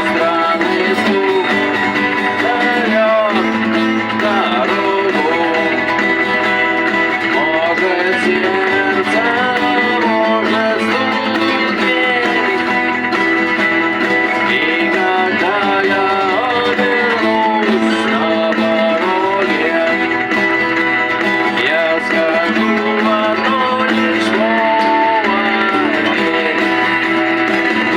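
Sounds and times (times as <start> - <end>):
guitar music: 0.0 - 27.9
person singing: 0.0 - 27.9.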